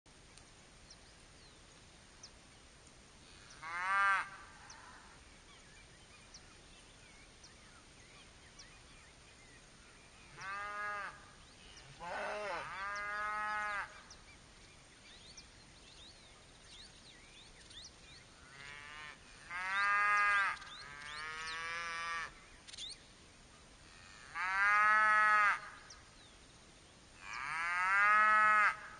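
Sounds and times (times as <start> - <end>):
cattle mooing: 12.0 - 13.9.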